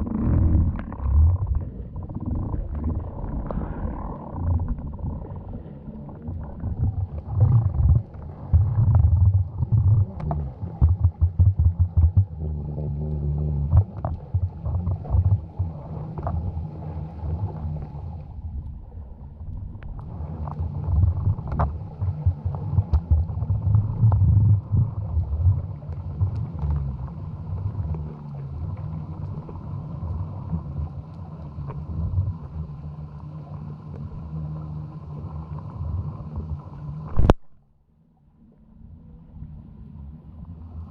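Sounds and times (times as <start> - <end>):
low underwater droning hum: 0.0 - 40.9
short underwater knocks and taps: 8.0 - 12.4.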